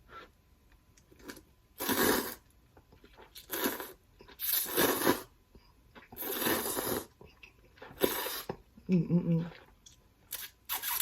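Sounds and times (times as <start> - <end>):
person eating noodles: 1.1 - 5.4, 6.0 - 8.6.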